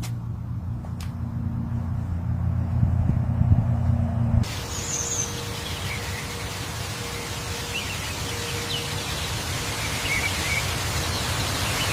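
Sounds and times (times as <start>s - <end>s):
outdoor background hiss: 4.4s - 11.9s.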